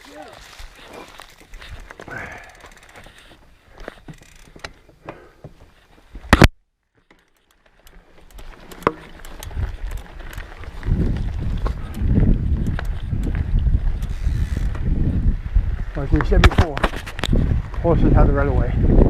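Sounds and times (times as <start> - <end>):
bike clicks and rattles: 0.0 - 19.0
wind rumble on microphone: 9.4 - 19.0.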